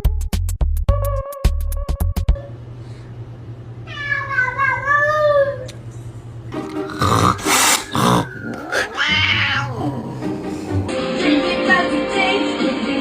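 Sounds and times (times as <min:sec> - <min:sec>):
cat meowing: 0:07.8 - 0:10.0.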